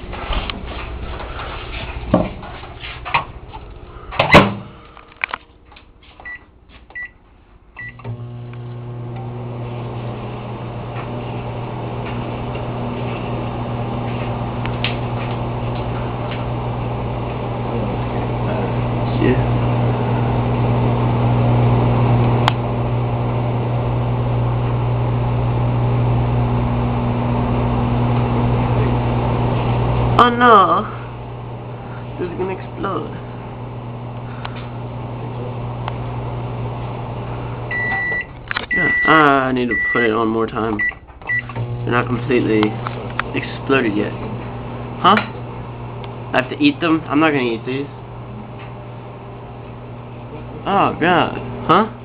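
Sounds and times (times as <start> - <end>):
microwave oven humming: 0.0 - 52.0
short keypad beeps: 37.7 - 39.1, 39.7 - 40.0.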